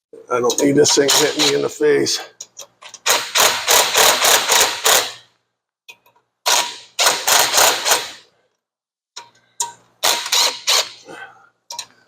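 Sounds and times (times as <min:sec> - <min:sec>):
ratchet wrench clicking: 0:09.6 - 0:11.0.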